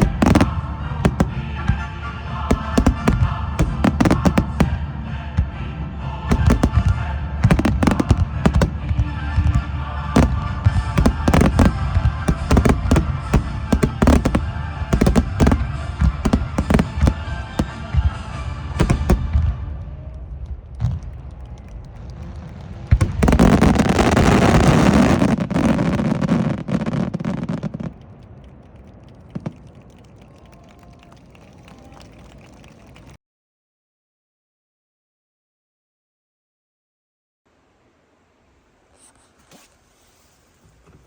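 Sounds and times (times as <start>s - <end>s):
fireworks bursting: 0.0s - 4.8s, 6.3s - 33.2s
fireworks crackling: 0.0s - 4.8s, 6.3s - 33.2s
music playing: 0.0s - 20.4s.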